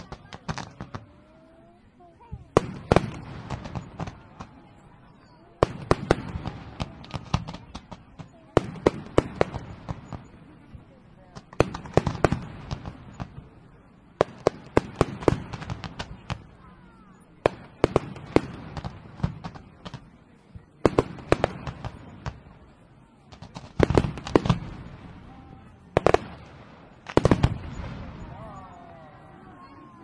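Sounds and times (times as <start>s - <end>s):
fireworks bangs and crackles: 0.0s - 30.0s.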